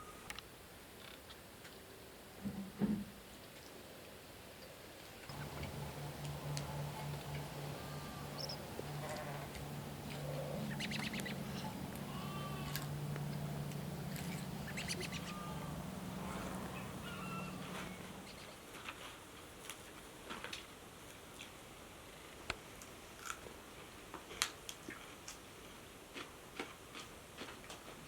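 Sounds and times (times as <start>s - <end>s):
bird chirps: 5.3s - 18.5s
low hum: 5.3s - 18.5s
livestock bleating: 5.8s - 18.2s.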